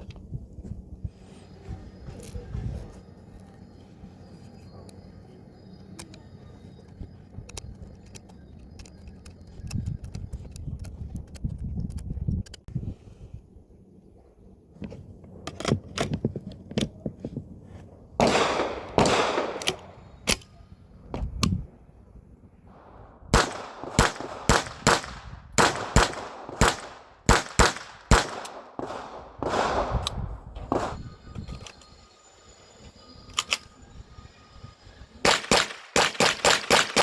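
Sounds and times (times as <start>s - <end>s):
rifle shots cracking: 18.2s - 19.9s, 23.3s - 30.1s, 35.2s - 37.0s.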